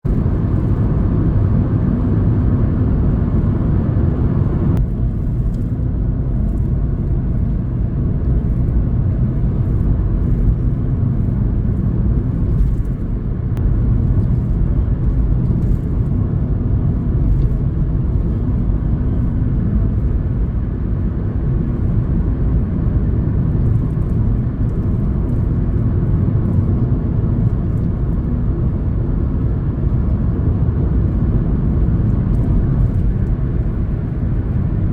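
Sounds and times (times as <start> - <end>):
vehicle driving on road: 0.0 - 34.9.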